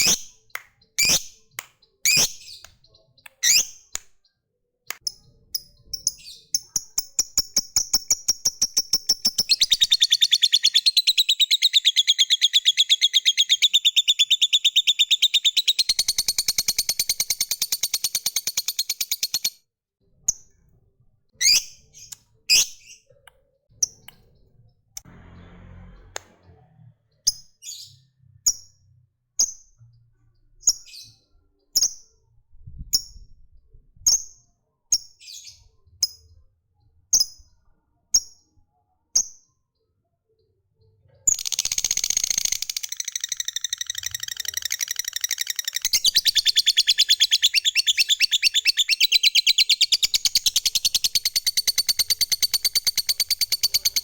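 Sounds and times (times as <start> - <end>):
bird chattering trill: 0.0 - 1.5, 2.1 - 2.7, 3.3 - 4.0, 5.0 - 19.5, 41.3 - 54.0
lovebird chirping: 0.0 - 19.6, 21.4 - 25.4, 41.3 - 54.0.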